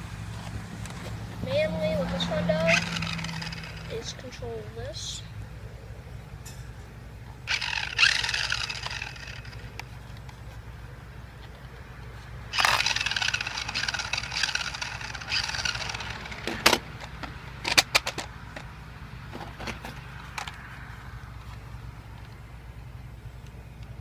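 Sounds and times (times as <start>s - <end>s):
toy car electric motor whirring: 1.8s - 4.4s, 7.5s - 9.8s, 12.5s - 16.8s
sharp clicks and knocks: 12.6s - 18.7s.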